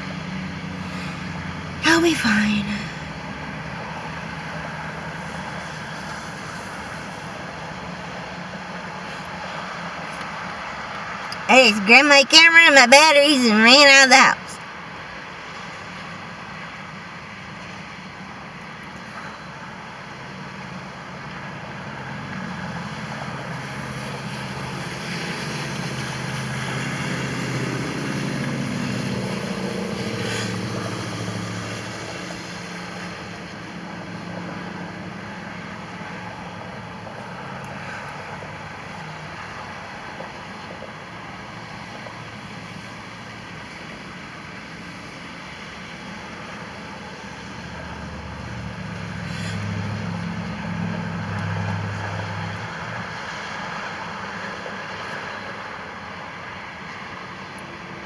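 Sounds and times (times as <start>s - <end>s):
vehicle engine passing by: 47.5s - 54.9s.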